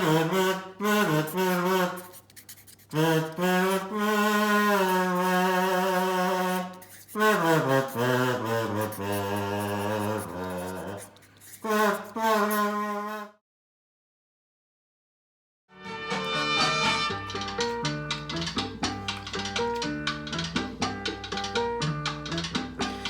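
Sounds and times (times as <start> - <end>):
slow sliding solo melody: 15.8 - 18.9.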